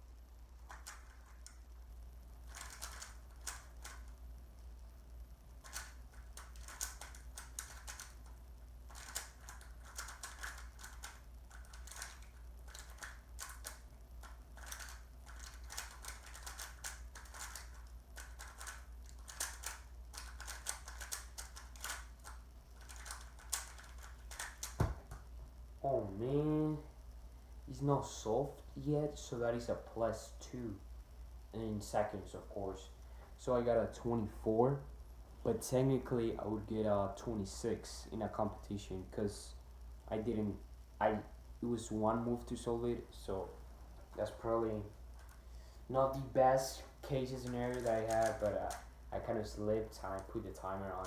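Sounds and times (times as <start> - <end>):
puzzle cube clicking: 2.5 - 4.1, 5.6 - 8.3, 8.9 - 24.8, 47.4 - 48.9.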